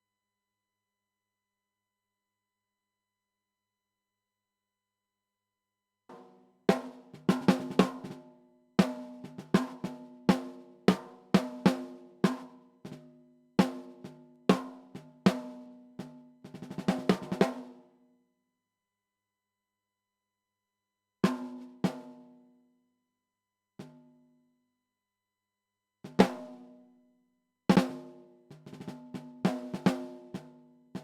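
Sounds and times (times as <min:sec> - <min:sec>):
snare drum roll: 0:16.6 - 0:17.6.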